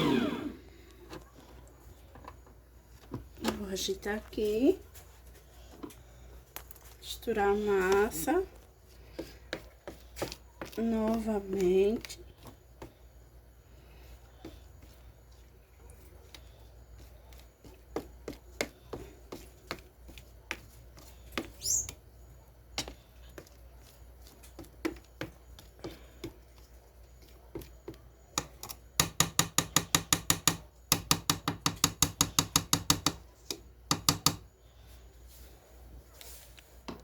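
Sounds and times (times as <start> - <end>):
utensil knocking against bowl: 29.0 - 33.2.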